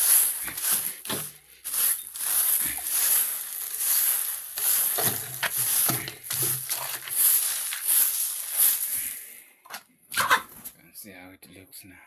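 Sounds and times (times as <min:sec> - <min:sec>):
broom sweeping a floor: 0:00.0 - 0:09.3
hens clucking: 0:09.7 - 0:10.7.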